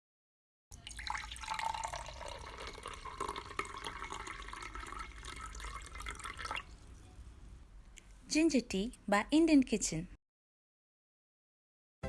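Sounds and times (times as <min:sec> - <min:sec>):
liquid pouring and splashing: 0:00.7 - 0:06.8.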